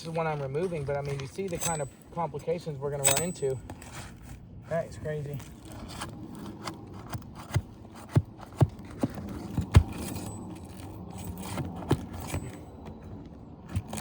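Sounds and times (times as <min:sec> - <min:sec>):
tool scraping shingles: 0:00.0 - 0:02.3, 0:05.3 - 0:14.0.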